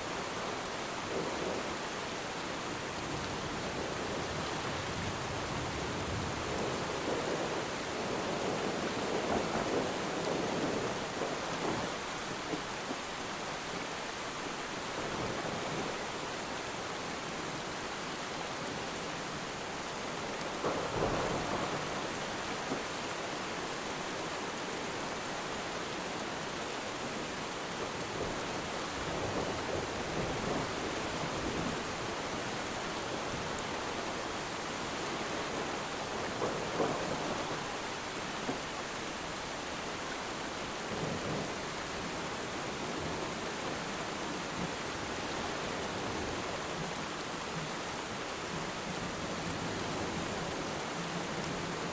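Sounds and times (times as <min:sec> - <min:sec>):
rain falling on water: 0:00.0 - 0:51.9
distant thunder rumbling: 0:20.5 - 0:22.9, 0:34.8 - 0:37.8.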